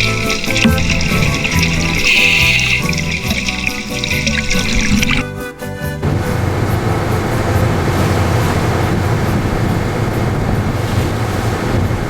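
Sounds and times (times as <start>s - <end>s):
boat engine rumbling: 0.0s - 5.2s, 6.0s - 12.0s
water hissing: 0.0s - 5.2s
wind: 0.0s - 12.0s.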